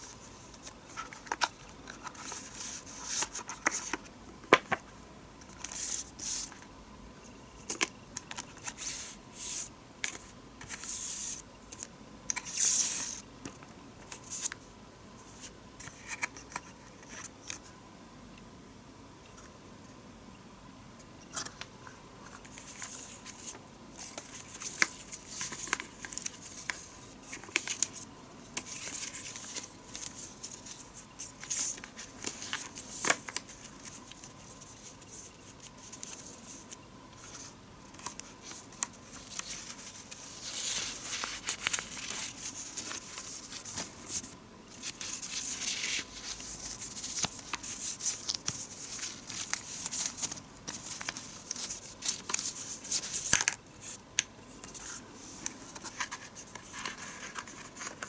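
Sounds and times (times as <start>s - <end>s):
packaging rustling and crinkling: 38.0s - 53.6s.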